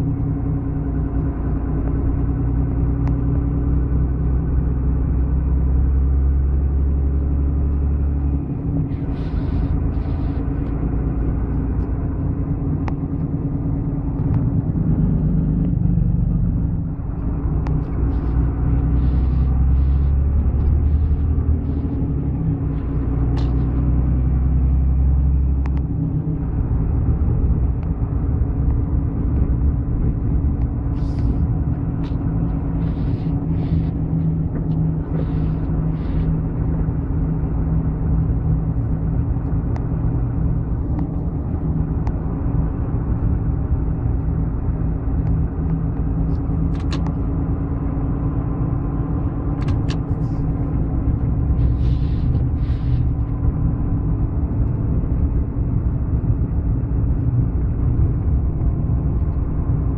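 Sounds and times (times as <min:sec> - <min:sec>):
low road rumble: 0:00.0 - 0:59.9
vehicle engine running: 0:00.0 - 0:59.9.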